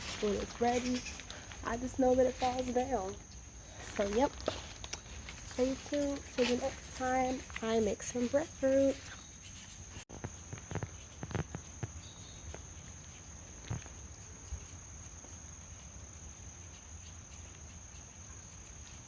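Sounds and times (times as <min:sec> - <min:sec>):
soft knocks and light steps: 0:00.0 - 0:14.0
high-pitched insect chorus: 0:00.0 - 0:19.0.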